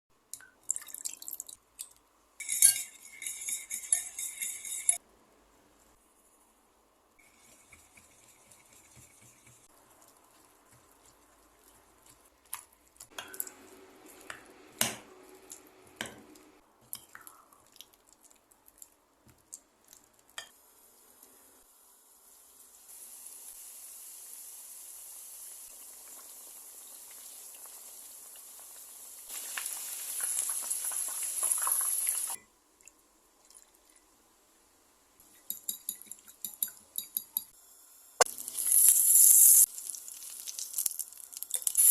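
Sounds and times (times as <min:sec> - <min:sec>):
utensils clinking against bowls: 0:02.4 - 0:05.0
steady hiss: 0:37.6 - 0:41.9.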